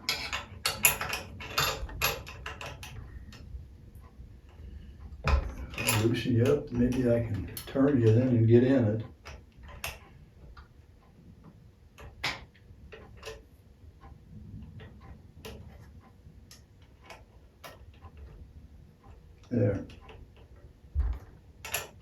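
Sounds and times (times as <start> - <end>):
hand tool clicking and tapping: 0.0 - 3.4, 19.4 - 22.0.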